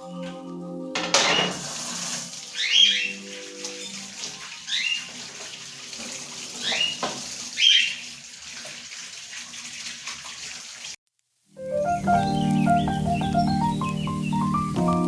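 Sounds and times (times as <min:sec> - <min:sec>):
tap water running into sink: 0:01.0 - 0:11.0.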